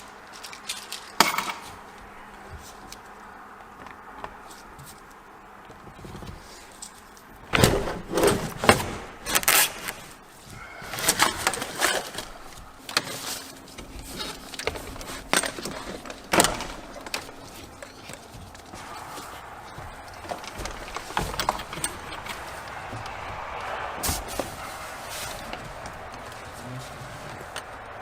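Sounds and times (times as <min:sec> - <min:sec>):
clatter of hand tools: 0:00.2 - 0:01.8, 0:10.8 - 0:23.2.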